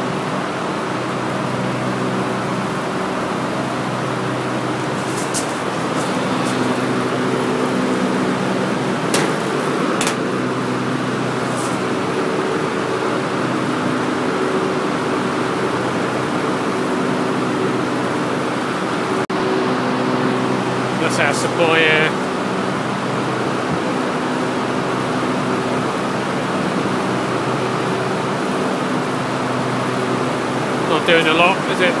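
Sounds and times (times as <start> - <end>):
air conditioner fan rushing: 0.0 - 32.0
machine hum: 1.0 - 21.6.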